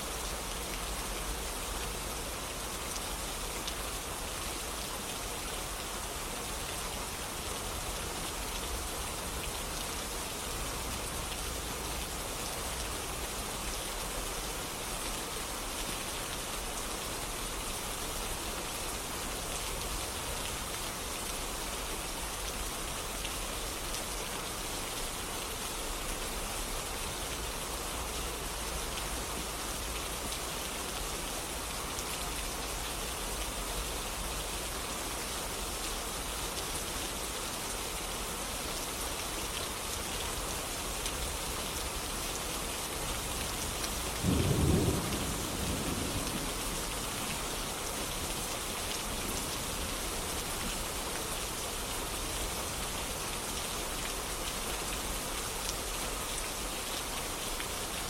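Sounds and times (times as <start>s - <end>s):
steady rain: 0.0s - 58.0s
low thunder rumble: 44.2s - 47.0s.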